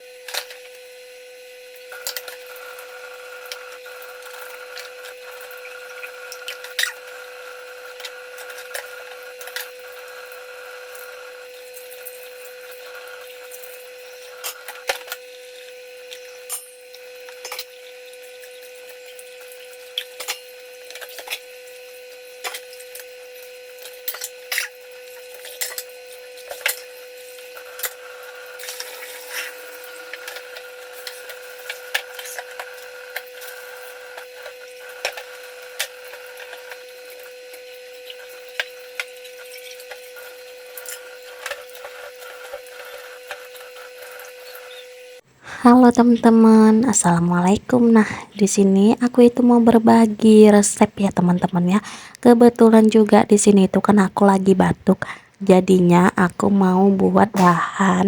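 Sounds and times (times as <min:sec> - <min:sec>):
steady hum: 0:45.1 - 0:58.0.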